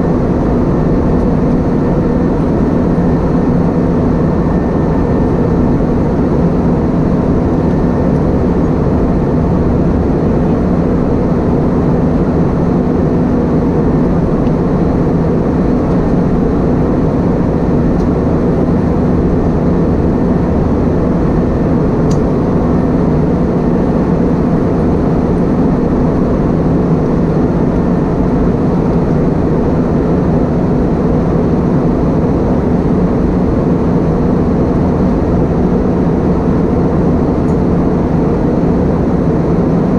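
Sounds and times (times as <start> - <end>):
airplane cabin drone: 0.0 - 39.9.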